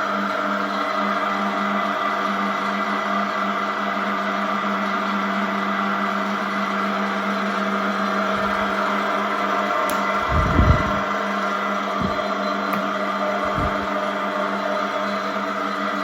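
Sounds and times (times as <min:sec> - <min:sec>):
milling machine whine: 0:08.1 - 0:09.1, 0:09.9 - 0:11.2, 0:12.0 - 0:14.1.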